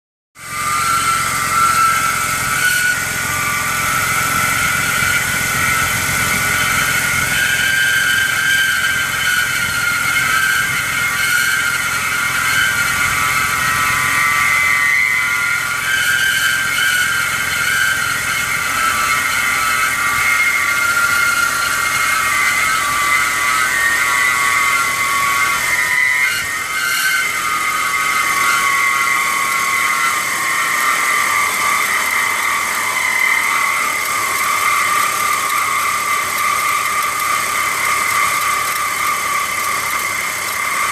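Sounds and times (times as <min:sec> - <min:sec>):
car engine running: 0:00.4 - 0:15.5, 0:27.4 - 0:40.9
high-pitched belt squeal: 0:00.4 - 0:40.9.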